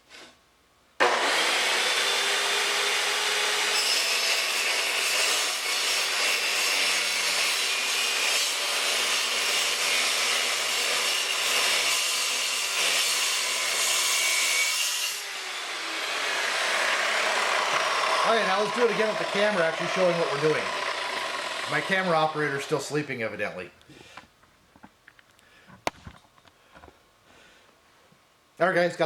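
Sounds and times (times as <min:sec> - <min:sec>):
circular saw cutting steel: 0:01.0 - 0:23.2.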